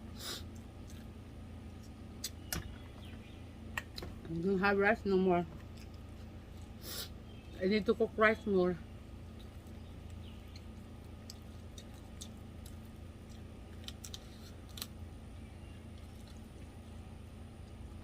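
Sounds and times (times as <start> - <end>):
steady low hum: 0.0 - 18.0
person chewing and mouth clicks: 0.4 - 2.4, 9.3 - 14.9, 15.9 - 17.0.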